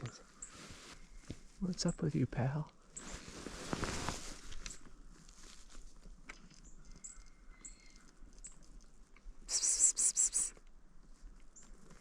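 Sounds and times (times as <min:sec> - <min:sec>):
faint ticks and crunches: 0:00.0 - 0:12.0.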